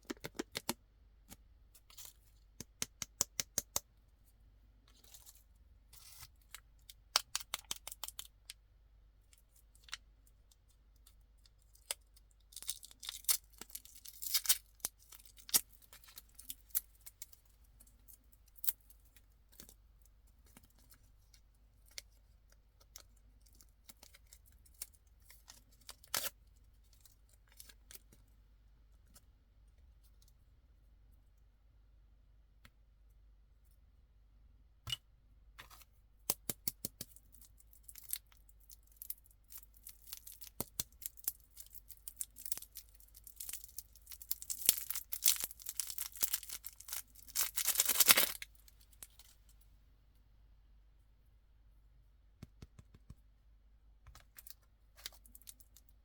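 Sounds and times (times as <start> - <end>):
candy wrappers crinkling and tearing: 11.8 - 17.5, 37.2 - 49.3.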